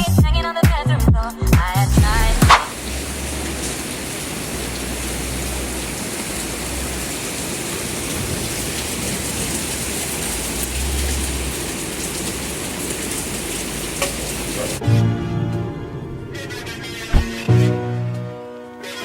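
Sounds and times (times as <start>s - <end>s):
heavy rain hissing: 2.1s - 14.8s
low rumble: 15.7s - 17.5s.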